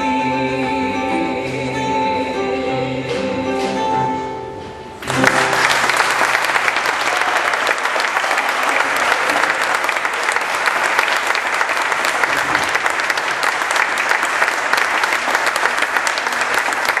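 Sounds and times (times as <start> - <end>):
audience applause: 5.0 - 17.0.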